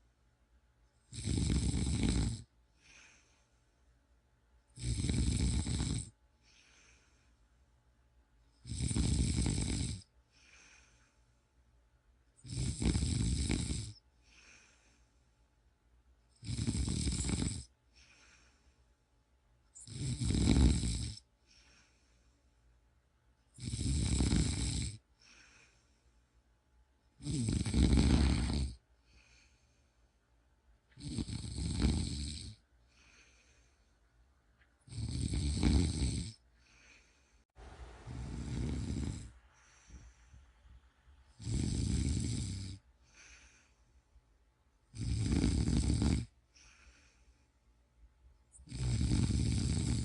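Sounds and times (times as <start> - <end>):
person snoring: 1.1 - 3.3, 4.8 - 7.1, 8.6 - 11.0, 12.4 - 14.8, 16.4 - 18.6, 19.8 - 22.0, 23.6 - 25.8, 27.2 - 29.6, 30.9 - 33.7, 34.9 - 37.2, 38.0 - 40.3, 41.3 - 43.8, 44.9 - 47.3, 48.5 - 50.0
faint breathing: 2.7 - 4.0, 6.3 - 7.8, 10.1 - 11.8, 13.9 - 15.6, 17.8 - 19.2, 21.4 - 22.8, 25.0 - 26.5, 28.0 - 30.4, 32.8 - 34.3, 36.3 - 44.3, 46.3 - 47.8.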